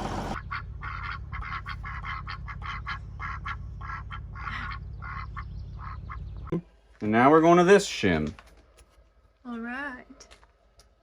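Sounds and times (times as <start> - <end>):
ducks quacking: 0.0 - 6.3.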